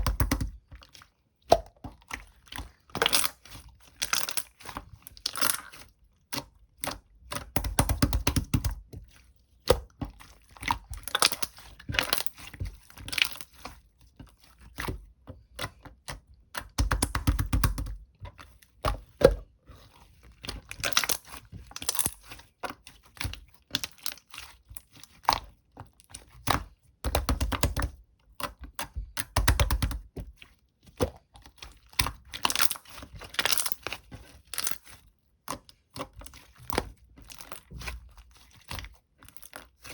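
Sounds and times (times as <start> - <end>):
slime crackling and popping: 11.0 - 12.4.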